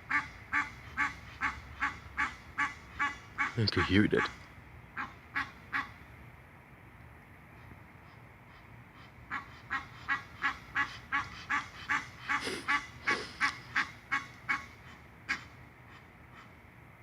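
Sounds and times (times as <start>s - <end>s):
goose honking harsh calls: 9.3s - 16.5s.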